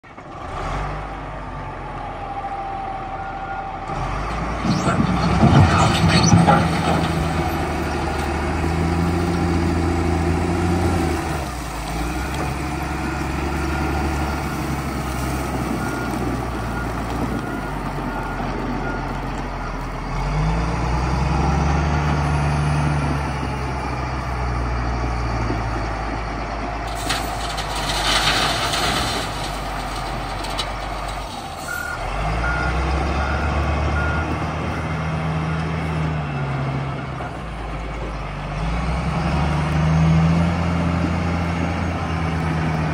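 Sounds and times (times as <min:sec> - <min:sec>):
diesel engine revving: 0:00.2 - 0:42.9
reversing alarm beeps: 0:31.7 - 0:34.4.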